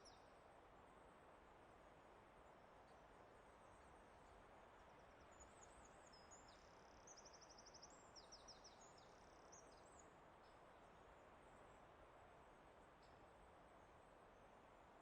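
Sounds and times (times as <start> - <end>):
songbird singing: 0.0 - 0.4, 2.8 - 11.8
soft forest ambience hiss: 0.0 - 15.0.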